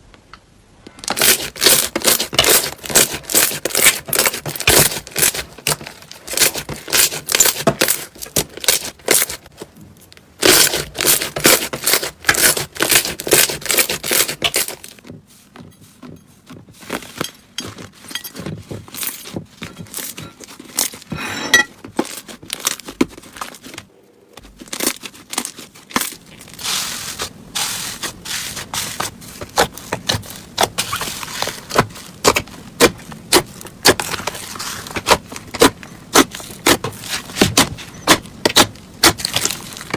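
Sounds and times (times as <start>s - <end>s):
slime crackling and popping: 10.4s - 14.9s, 24.4s - 28.7s, 29.4s - 39.9s.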